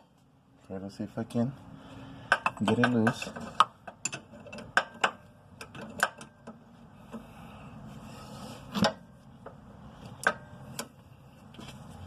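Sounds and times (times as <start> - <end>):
metal clanks and knocks: 2.3 - 6.6.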